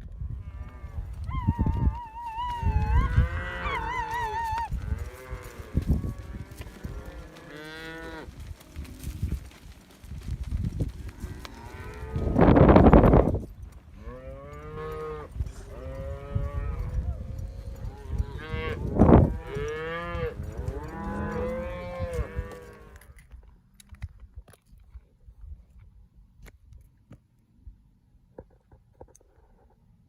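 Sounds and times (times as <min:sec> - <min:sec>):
cattle mooing: 0:03.0 - 0:08.3, 0:17.6 - 0:23.0.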